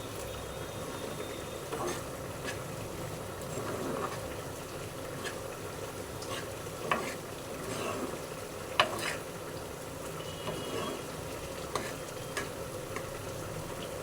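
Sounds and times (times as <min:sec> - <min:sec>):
food sizzling in a pan: 0:00.0 - 0:14.0.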